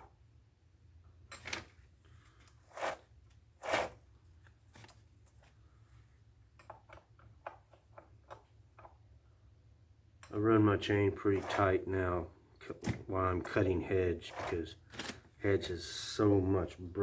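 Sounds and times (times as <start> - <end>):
metal chain scraping: 2.6 - 3.0, 3.6 - 4.0.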